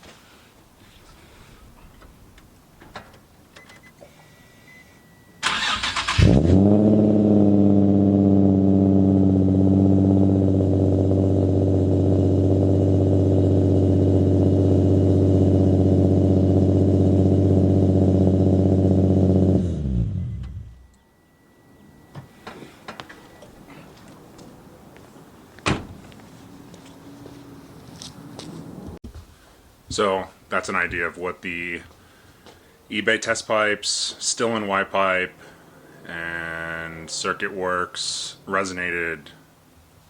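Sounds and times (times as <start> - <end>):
short beep: 3.6 - 5.6, 20.2 - 23.7
engine cranking and starting: 5.4 - 6.8
car engine idling: 5.5 - 27.8.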